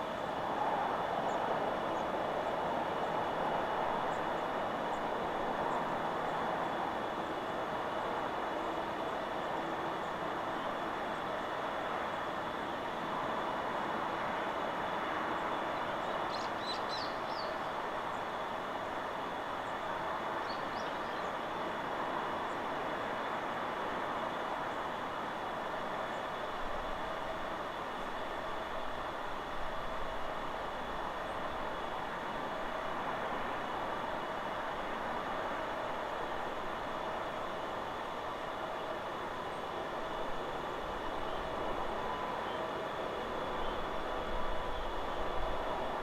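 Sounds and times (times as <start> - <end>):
wind through trees: 0.0 - 46.0
bird chirping: 16.3 - 17.6.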